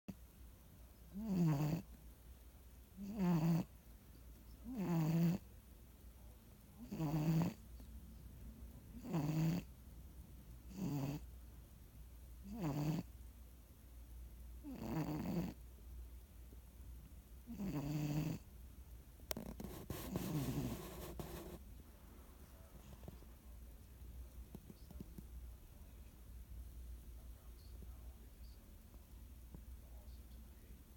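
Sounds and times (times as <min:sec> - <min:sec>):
cat snoring: 0:01.2 - 0:01.8, 0:03.0 - 0:03.7, 0:04.7 - 0:05.4, 0:06.8 - 0:07.6, 0:08.9 - 0:09.7, 0:10.7 - 0:11.2, 0:12.5 - 0:13.1, 0:14.6 - 0:15.6, 0:17.5 - 0:18.4, 0:19.4 - 0:21.6.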